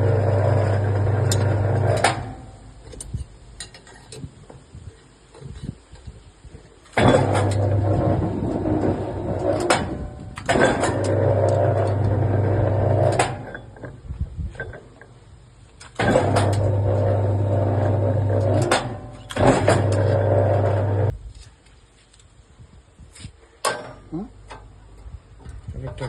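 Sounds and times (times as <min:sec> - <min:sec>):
machine motor humming: 0:00.0 - 0:02.4, 0:10.9 - 0:13.2, 0:16.0 - 0:18.7, 0:19.4 - 0:21.1
sharp machine clunk: 0:07.0 - 0:08.0, 0:09.4 - 0:13.8, 0:16.0 - 0:21.0.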